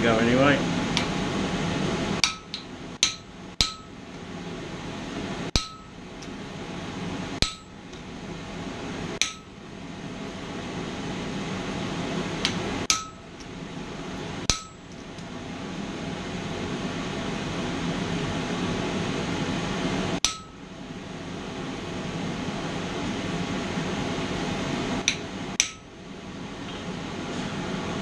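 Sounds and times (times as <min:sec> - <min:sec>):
hammer striking steel on anvil: 0:02.2 - 0:04.0, 0:05.5 - 0:06.0, 0:07.4 - 0:07.8, 0:09.2 - 0:09.6, 0:12.9 - 0:13.3, 0:14.5 - 0:14.9, 0:20.2 - 0:20.6, 0:25.1 - 0:25.9.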